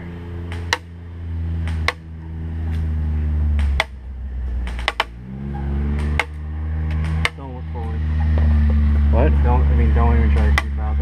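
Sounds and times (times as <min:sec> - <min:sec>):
steady low hum: 0:00.0 - 0:11.0
sharp airsoft gun cracks: 0:04.6 - 0:05.2.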